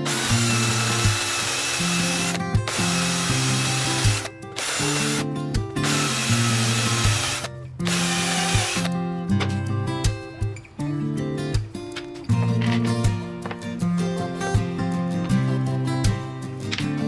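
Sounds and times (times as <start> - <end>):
power tool motor running: 0.0 - 9.0.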